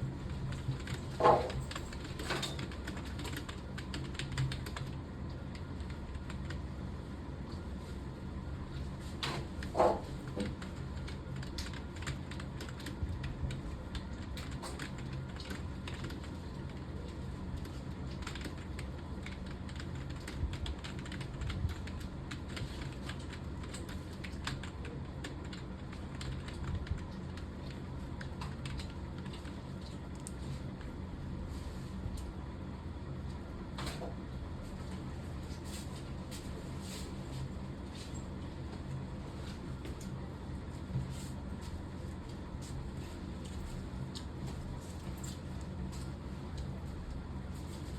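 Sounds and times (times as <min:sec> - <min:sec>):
low steady hum: 0:00.0 - 0:47.9
typing on computer keyboard: 0:00.5 - 0:06.6, 0:10.3 - 0:16.8, 0:17.6 - 0:30.3.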